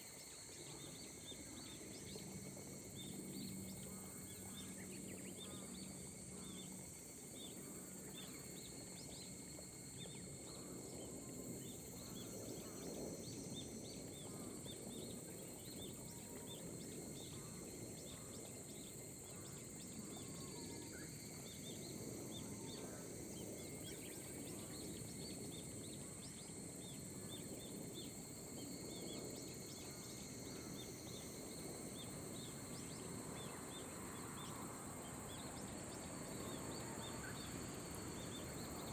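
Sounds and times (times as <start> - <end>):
gentle rain hiss: 5.8 - 38.9.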